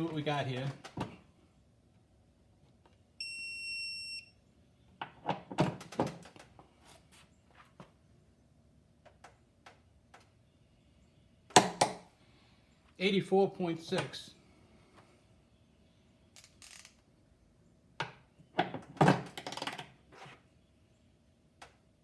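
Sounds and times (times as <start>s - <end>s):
electronic beep: 3.2s - 4.4s.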